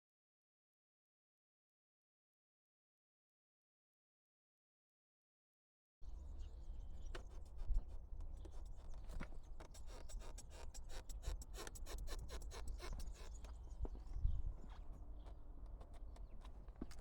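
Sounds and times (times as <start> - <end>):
scratchy rubbing and clicking: 7.1 - 13.6, 14.7 - 17.0.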